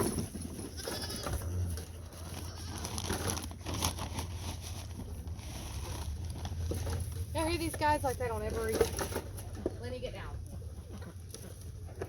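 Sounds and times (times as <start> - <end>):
barnyard animals calling: 0.0 - 3.5, 8.7 - 12.0.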